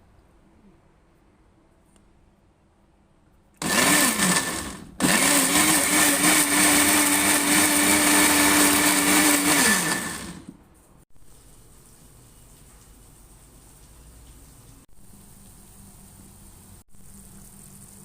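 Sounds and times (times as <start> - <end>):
electric blender motor: 3.6 - 10.5.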